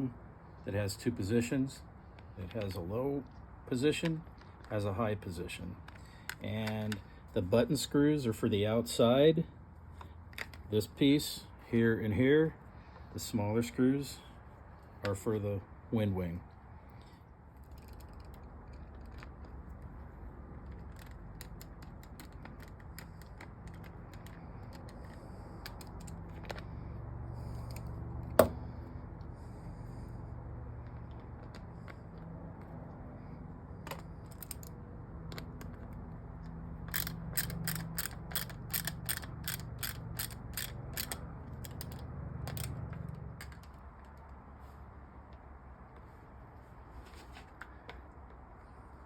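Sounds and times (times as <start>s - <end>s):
hand ratchet clicking: 17.6s - 19.4s, 20.6s - 26.7s, 36.8s - 44.2s.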